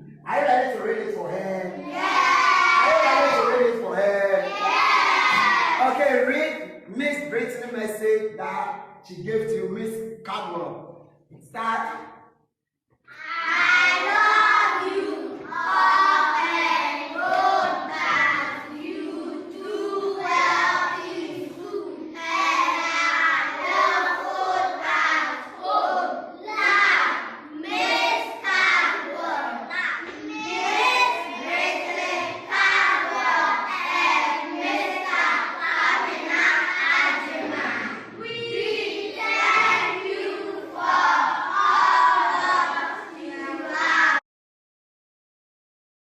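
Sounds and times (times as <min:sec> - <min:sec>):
children reading aloud in unison: 0:00.3 - 0:07.2, 0:13.1 - 0:44.2.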